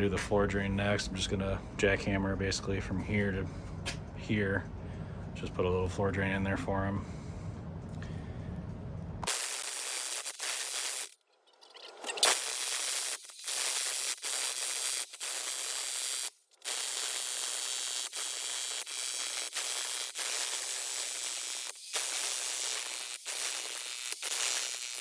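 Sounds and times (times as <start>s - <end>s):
jackhammer breaking concrete: 12.1s - 25.0s.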